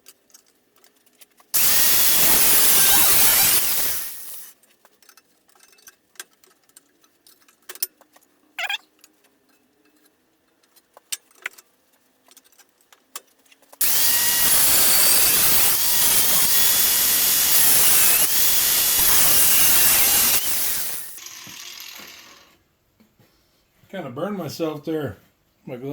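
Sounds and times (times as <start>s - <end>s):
power tool cutting metal: 1.6s - 4.5s, 13.8s - 22.6s.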